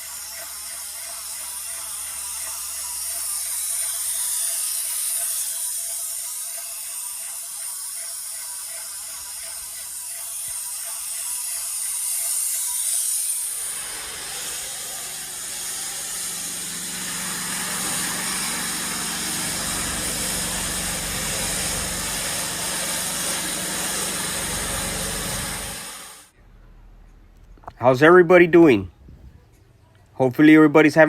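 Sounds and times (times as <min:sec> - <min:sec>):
paint sprayer hissing: 0:00.0 - 0:26.3
low hum: 0:13.5 - 0:27.8.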